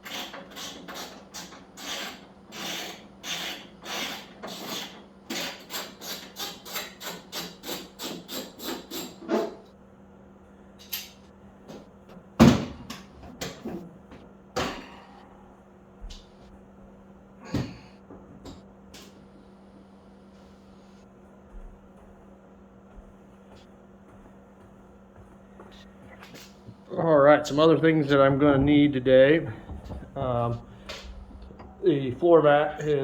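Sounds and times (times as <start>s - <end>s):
hand tool scraping strokes: 0.0s - 9.6s.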